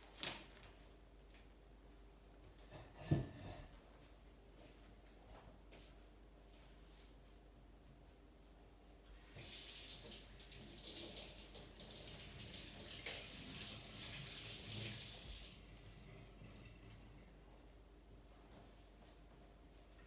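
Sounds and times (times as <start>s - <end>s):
tap water splashing: 9.4s - 15.6s.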